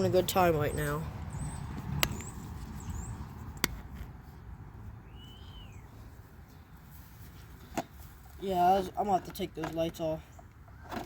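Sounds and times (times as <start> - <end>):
bird whistle call: 5.1 - 5.9.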